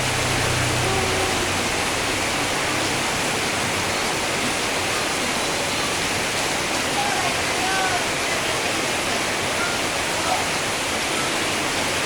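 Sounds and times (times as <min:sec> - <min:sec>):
heavy rain: 0:00.0 - 0:12.0.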